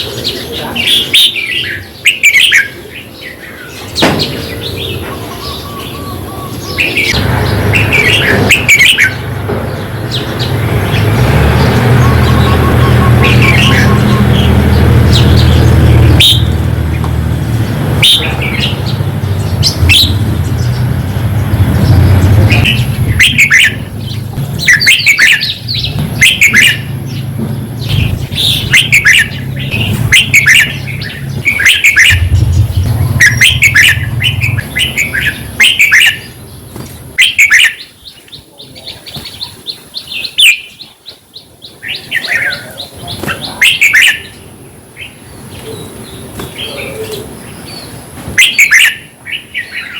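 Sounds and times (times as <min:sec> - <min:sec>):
bird singing warbled phrases: 0:00.0 - 0:49.9
low steady hum: 0:30.7 - 0:35.6.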